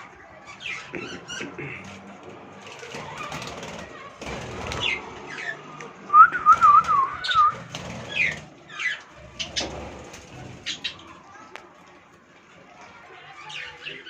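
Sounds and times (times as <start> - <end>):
budgerigars chirping and warbling: 0.4 - 1.9, 4.4 - 5.6, 7.2 - 11.3, 13.2 - 14.0.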